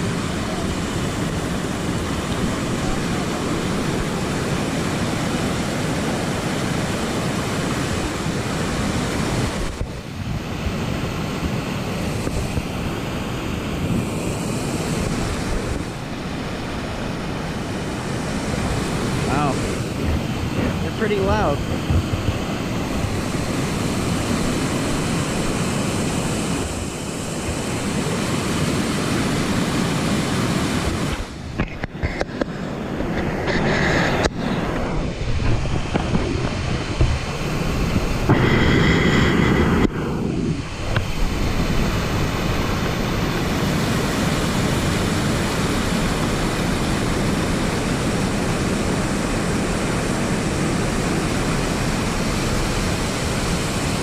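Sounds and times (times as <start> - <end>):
waterfall rushing: 0.0 - 39.6, 40.2 - 54.0.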